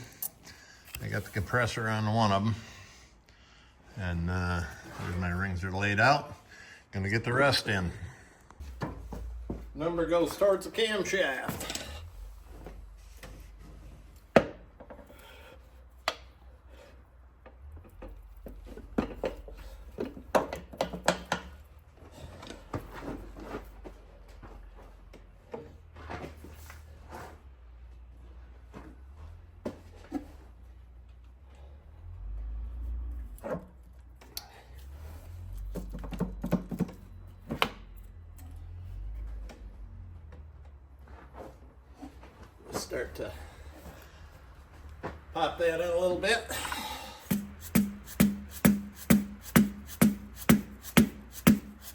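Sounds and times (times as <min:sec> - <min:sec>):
tools knocking on metal: 0:47.2 - 0:51.7.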